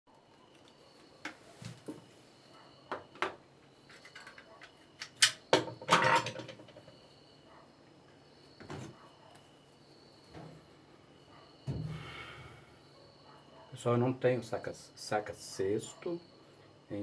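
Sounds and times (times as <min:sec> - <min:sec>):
objects knocking and clunking: 0:02.9 - 0:07.0, 0:08.6 - 0:09.0, 0:11.6 - 0:12.0.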